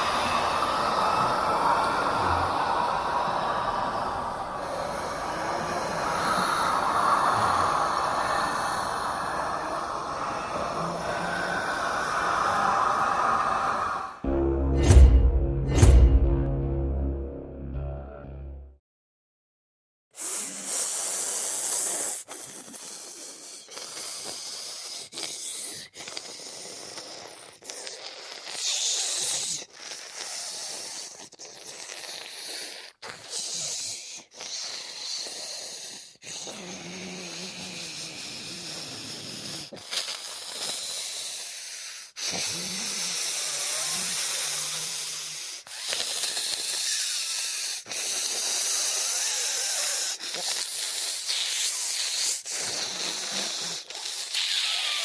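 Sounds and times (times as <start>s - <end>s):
hissing snarls and rasping exhales: 0.0s - 14.3s, 20.2s - 55.0s
low drawn-out moans: 14.2s - 18.7s.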